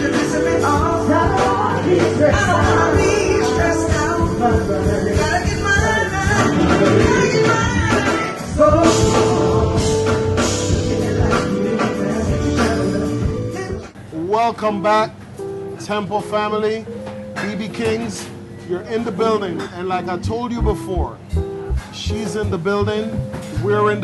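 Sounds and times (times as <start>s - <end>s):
song with band and drums: 0.0s - 13.9s.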